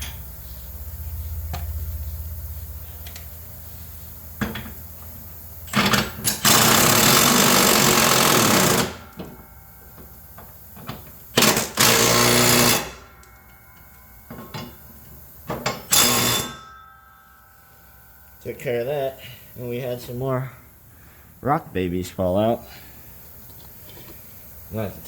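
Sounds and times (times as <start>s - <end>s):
impact wrench hammering: 5.7s - 17.4s.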